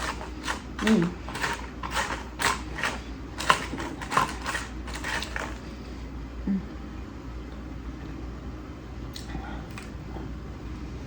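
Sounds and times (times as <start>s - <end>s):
chewing crunchy food: 0.0s - 5.7s.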